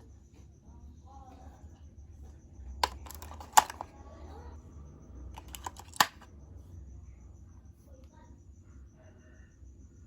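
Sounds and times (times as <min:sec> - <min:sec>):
plastic toy clicks and taps: 0:02.8 - 0:03.8, 0:05.4 - 0:06.2.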